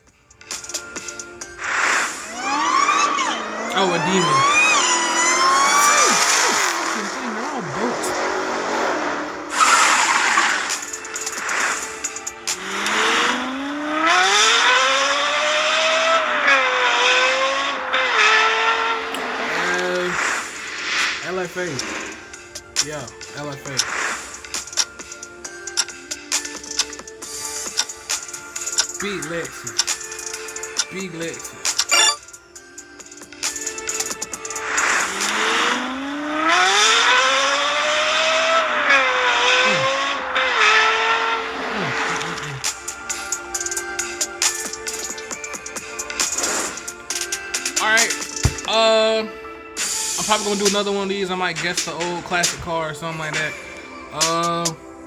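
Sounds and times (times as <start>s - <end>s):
car engine revving hard: 1.6s - 20.5s, 34.7s - 43.4s.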